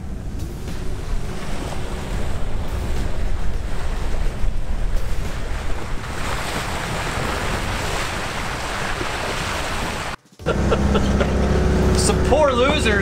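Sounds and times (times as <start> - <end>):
wind buffeting microphone: 0.0 - 10.2
water rushing along hull: 0.0 - 13.0.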